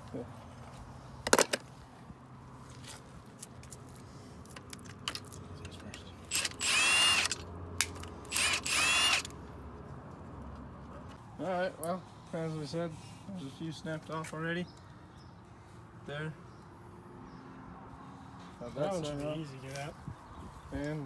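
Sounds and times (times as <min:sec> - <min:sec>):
cordless power tool whine: 0:06.3 - 0:09.4.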